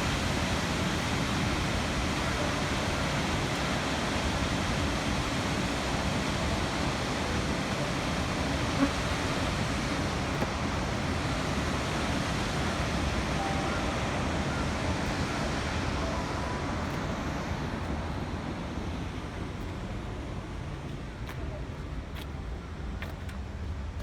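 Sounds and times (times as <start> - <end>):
water roaring through a dam: 0.0 - 24.0.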